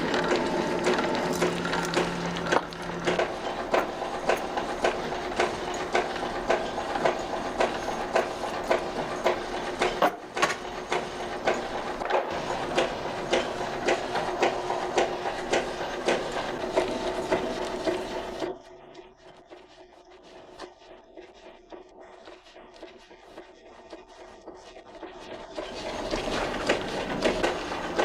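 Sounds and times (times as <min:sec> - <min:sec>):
milling machine humming: 0:00.0 - 0:18.5, 0:25.6 - 0:28.0.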